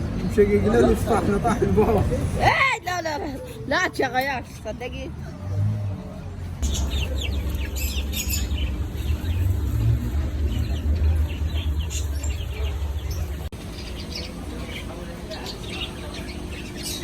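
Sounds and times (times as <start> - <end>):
small birds chirping: 6.5 - 17.0.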